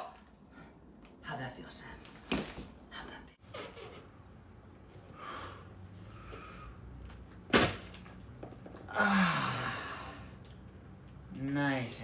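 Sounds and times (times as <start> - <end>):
breathy vocal sound: 8.9 - 10.4.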